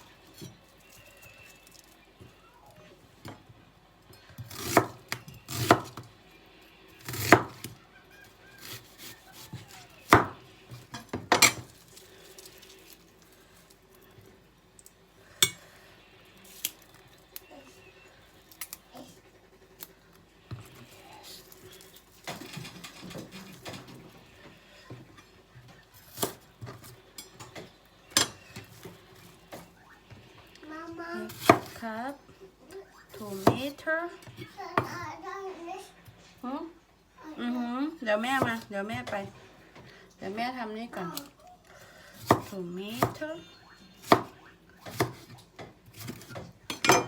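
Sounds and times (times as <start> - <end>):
kitchenware clinking: 9.4 - 11.9, 15.4 - 15.7, 22.1 - 24.2, 26.1 - 29.2, 46.0 - 47.0.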